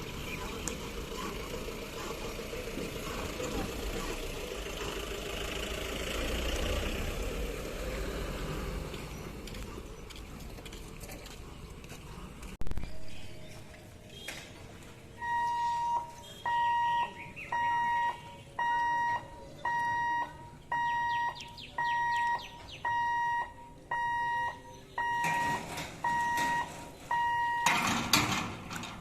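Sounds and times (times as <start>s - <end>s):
level crossing alarm beeping: 15.2s - 28.0s.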